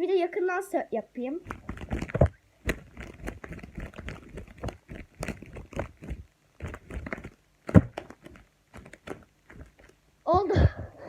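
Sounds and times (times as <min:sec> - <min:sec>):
leather gloves flapping: 0:01.4 - 0:10.0.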